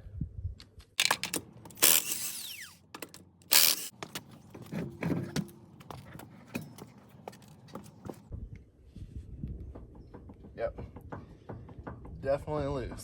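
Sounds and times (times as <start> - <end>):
lug nuts and socket clinking: 1.0 - 2.2
power tool spinning lug nuts: 1.0 - 4.0.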